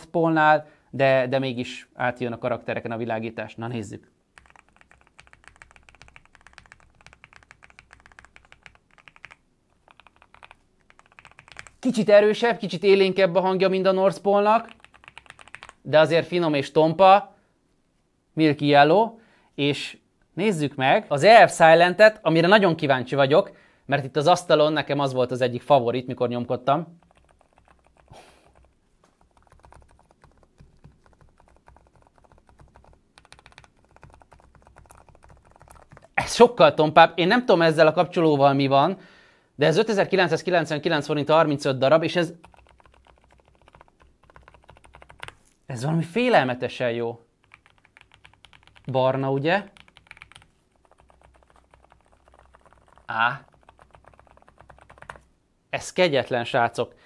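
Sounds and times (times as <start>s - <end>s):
fast mechanical keyboard typing: 4.4s - 11.8s, 14.6s - 15.8s, 27.0s - 36.2s, 42.4s - 45.4s, 47.4s - 49.0s, 49.7s - 55.2s.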